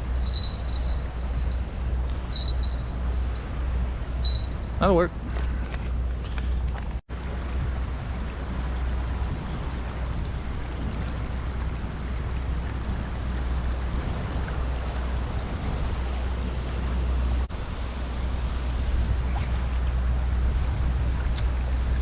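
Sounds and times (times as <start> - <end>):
wind rumbling on microphone: 0.0 - 22.0.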